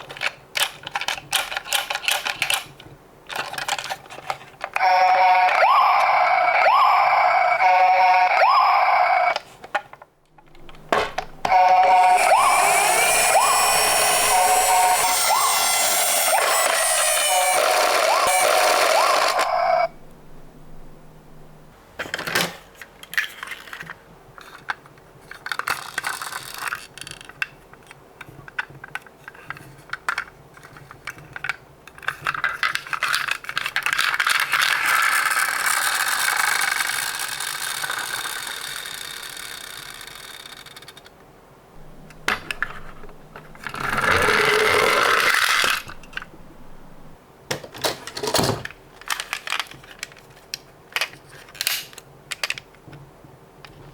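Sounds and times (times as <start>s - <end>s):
toy cars clicking and clattering: 0.0s - 5.6s, 11.5s - 19.8s, 22.2s - 41.2s, 43.6s - 46.3s, 47.8s - 52.8s
toy car rolling rattle: 11.5s - 19.8s, 23.0s - 27.5s, 28.5s - 41.1s, 43.6s - 46.2s.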